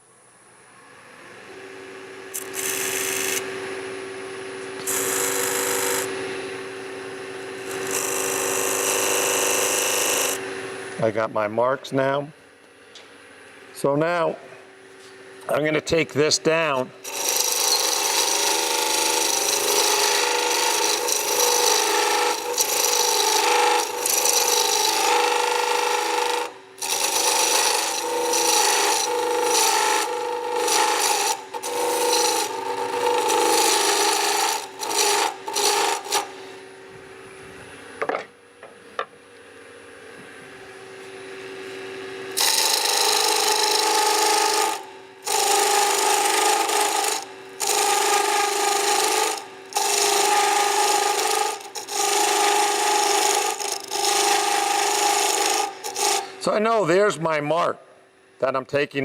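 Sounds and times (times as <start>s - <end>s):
wood lathe running hum: 1.3s - 11.0s, 15.0s - 37.8s, 40.4s - 57.2s
chisel scraping spinning wood: 2.4s - 3.5s, 4.8s - 6.5s, 7.5s - 10.5s, 15.6s - 36.4s, 42.4s - 57.1s.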